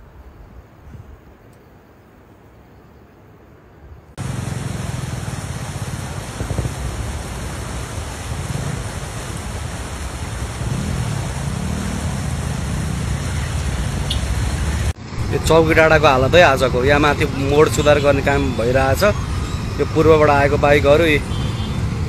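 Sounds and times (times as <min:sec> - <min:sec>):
loud steady hiss: 0:04.2 - 0:15.0
vehicle engines running: 0:04.2 - 0:22.0.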